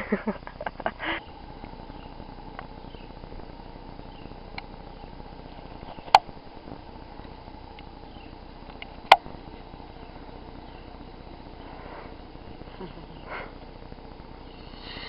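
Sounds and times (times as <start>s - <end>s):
faint ticks: 1.6s - 2.8s, 3.4s - 4.8s, 5.5s - 9.8s
sharp clicks: 5.6s - 6.4s, 8.6s - 9.3s.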